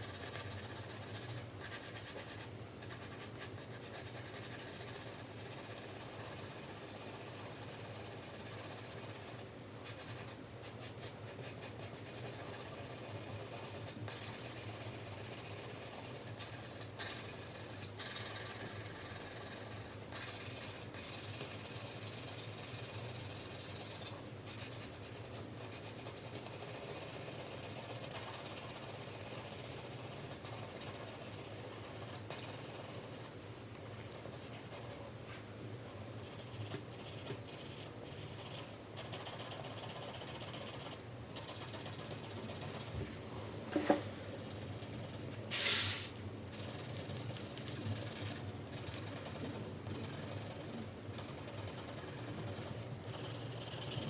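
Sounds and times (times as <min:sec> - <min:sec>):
short loud hiss: 0:45.5 - 0:46.2
pencil shading on paper: 0:46.6 - 0:54.0.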